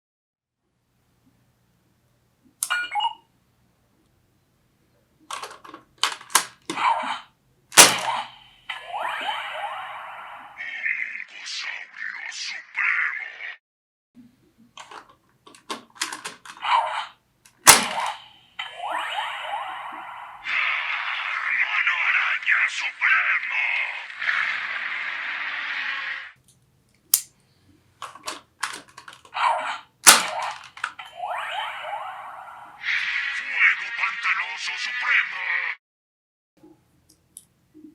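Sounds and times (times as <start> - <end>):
sharp electronic bursts: 8.0 - 11.2, 17.8 - 23.6, 31.0 - 33.6.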